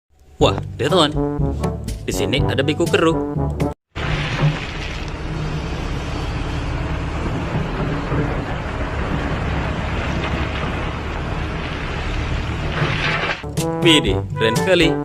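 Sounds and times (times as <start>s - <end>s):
diesel engine rumbling: 3.9s - 15.0s.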